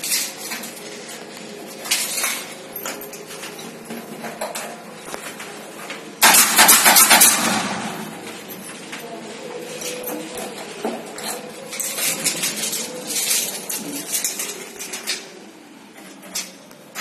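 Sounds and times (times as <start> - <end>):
loud rattling burst: 6.2 - 8.2.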